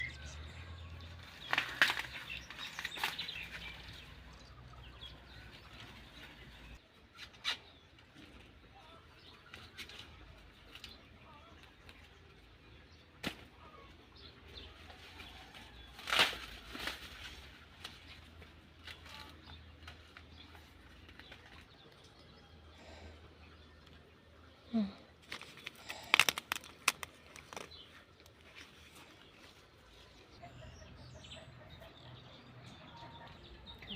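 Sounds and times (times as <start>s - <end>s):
dry leaves and husks rustling: 0.0s - 6.8s, 13.2s - 22.2s, 25.2s - 30.6s
corn stalks snapping: 1.4s - 3.9s, 13.2s - 13.5s, 15.8s - 20.0s, 25.2s - 27.8s.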